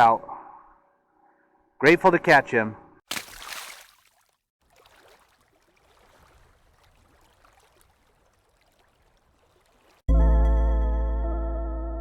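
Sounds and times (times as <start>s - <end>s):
river water flowing: 3.1s - 10.0s.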